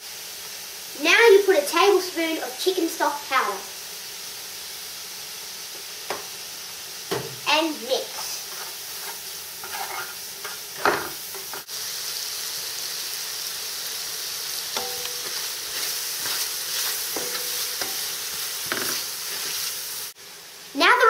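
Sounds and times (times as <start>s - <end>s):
vegetables sizzling in oil: 0.0s - 21.0s
utensil scraping a pan: 8.2s - 11.7s, 14.8s - 19.7s.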